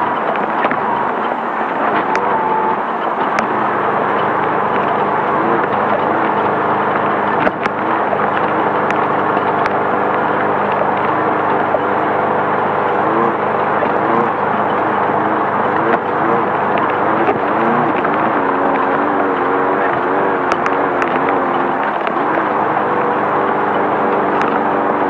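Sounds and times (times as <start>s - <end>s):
race car engine running: 0.0s - 25.0s
sharp engine knocks: 0.0s - 25.0s.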